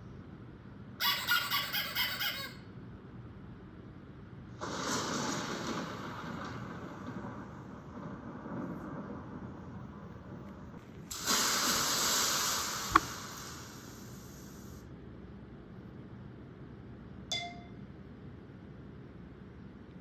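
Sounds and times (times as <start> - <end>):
hissing sound effect: 11.1 - 14.8.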